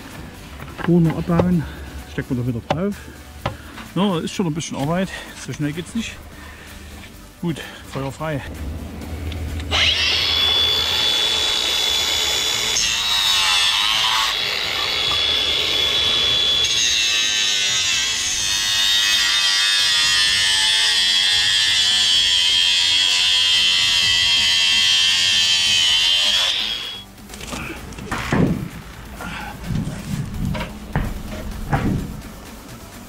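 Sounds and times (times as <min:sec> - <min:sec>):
angle grinder cutting: 0:08.5 - 0:27.1.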